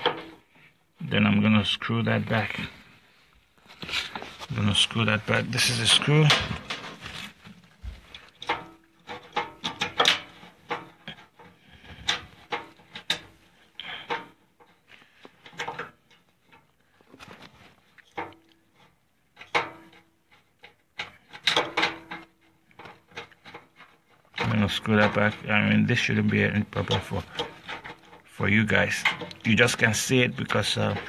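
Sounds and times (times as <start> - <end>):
metal parts clicking and scraping: 8.1 - 16.7, 18.0 - 31.0.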